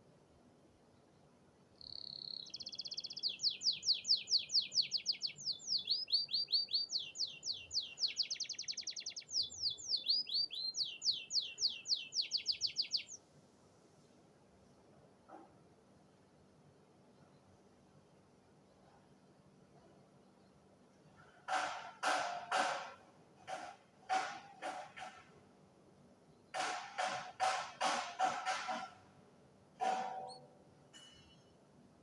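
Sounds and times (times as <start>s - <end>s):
canary singing trills: 1.8s - 13.2s, 29.8s - 30.5s.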